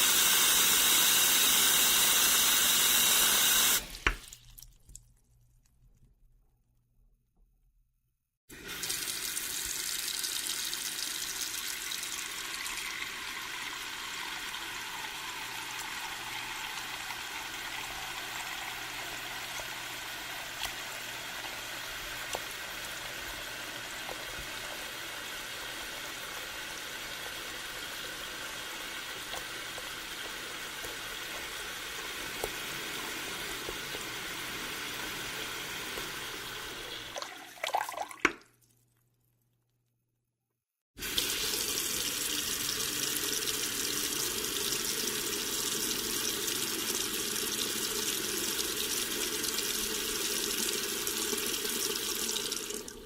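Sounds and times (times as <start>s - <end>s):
water drips: 3.9s - 5.8s
water pouring from tap: 8.5s - 38.4s, 41.0s - 53.0s.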